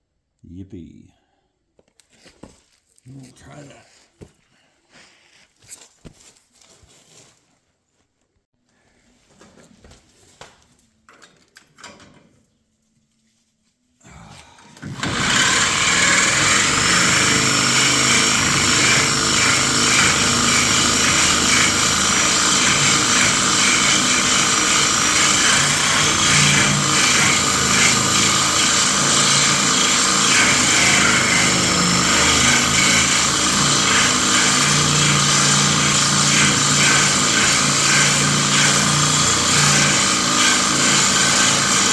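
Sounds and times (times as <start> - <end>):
faint handling sounds: 1.7 - 11.6, 12.3 - 14.0
angle grinder cutting bolt: 14.8 - 41.9.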